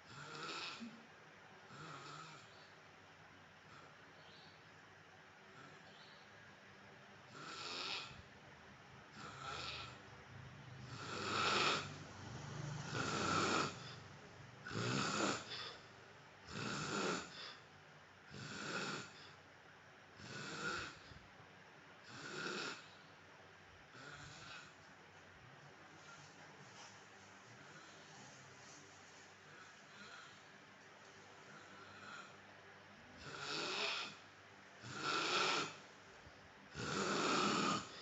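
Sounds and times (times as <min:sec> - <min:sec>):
man snoring: 0:00.0 - 0:01.0, 0:01.7 - 0:02.6, 0:07.3 - 0:08.3, 0:09.1 - 0:10.0, 0:10.8 - 0:14.0, 0:14.6 - 0:15.8, 0:16.4 - 0:17.6, 0:18.3 - 0:19.4, 0:20.2 - 0:21.1, 0:22.1 - 0:22.9, 0:23.9 - 0:24.8, 0:29.5 - 0:30.4, 0:31.5 - 0:32.4, 0:33.2 - 0:34.2, 0:34.8 - 0:35.8, 0:36.7 - 0:38.0.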